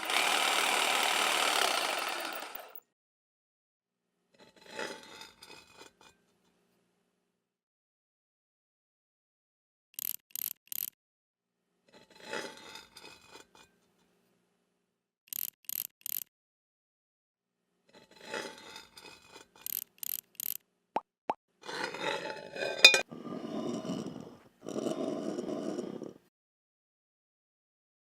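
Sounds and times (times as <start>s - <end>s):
sharp clicks: 10.0s - 11.0s, 15.3s - 16.3s.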